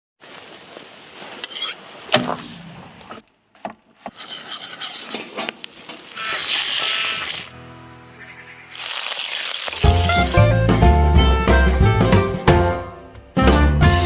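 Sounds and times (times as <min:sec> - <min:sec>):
rubbing and scraping on wood: 0:03.8 - 0:06.8.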